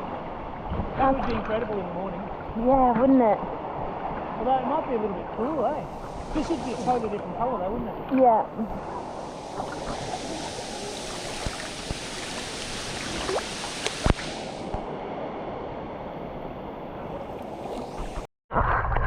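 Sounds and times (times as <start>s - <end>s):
waterfall rushing: 8.7s - 14.8s.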